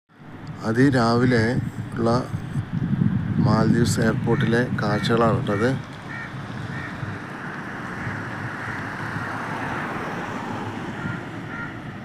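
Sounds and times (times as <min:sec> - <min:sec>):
distant engines: 0:00.1 - 0:12.0
wind: 0:00.1 - 0:12.0
faint calls: 0:03.9 - 0:11.9.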